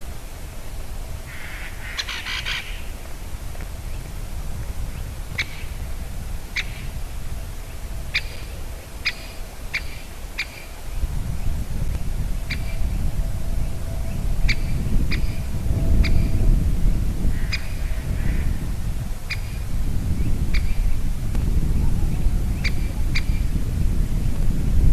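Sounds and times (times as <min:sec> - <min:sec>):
low rumble: 0:00.0 - 0:24.9
woodpecker kik calls: 0:01.3 - 0:03.0, 0:05.4 - 0:05.8, 0:06.5 - 0:06.9, 0:08.1 - 0:10.8, 0:17.4 - 0:18.4.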